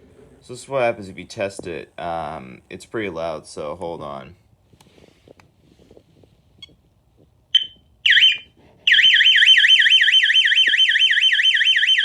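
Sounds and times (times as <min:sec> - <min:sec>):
warbling alarm siren: 0:07.5 - 0:12.0
short alarm beep: 0:07.6 - 0:10.3.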